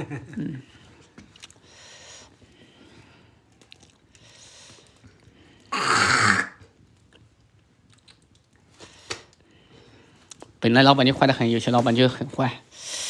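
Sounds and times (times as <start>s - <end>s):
person throat noise: 5.7s - 6.7s.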